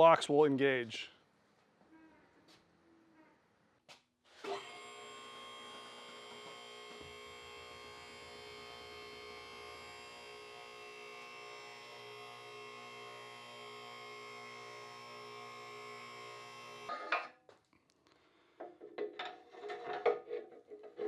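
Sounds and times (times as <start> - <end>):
hydraulic pump humming: 4.4 - 17.1.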